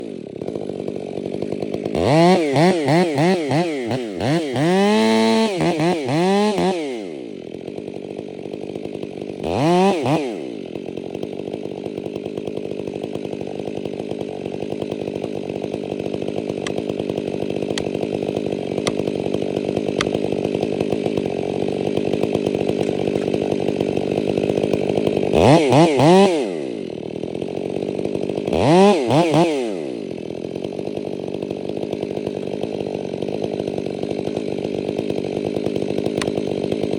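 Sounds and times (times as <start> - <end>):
chainsaw idling and revving: 0.0 - 36.9.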